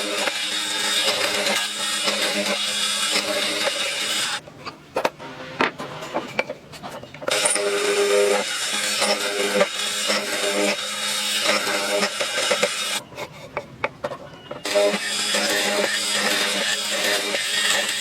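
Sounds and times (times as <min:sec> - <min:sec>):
power tool humming on wood: 0:00.0 - 0:04.4, 0:07.3 - 0:13.0, 0:14.6 - 0:18.0.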